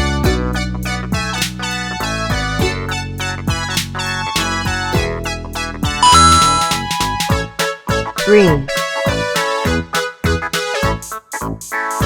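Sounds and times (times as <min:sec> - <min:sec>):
bouncy keyboard notes: 0:05.9 - 0:09.4
bright held chord: 0:06.0 - 0:07.0.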